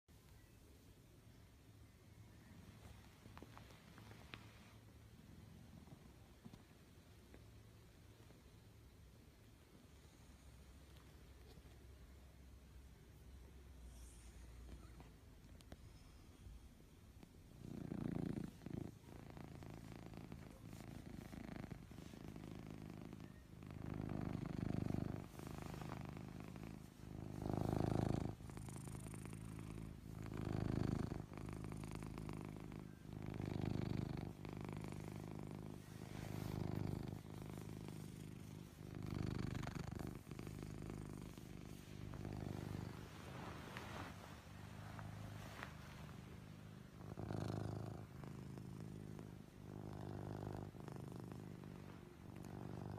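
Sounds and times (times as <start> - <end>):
cat snoring: 17.4 - 52.9.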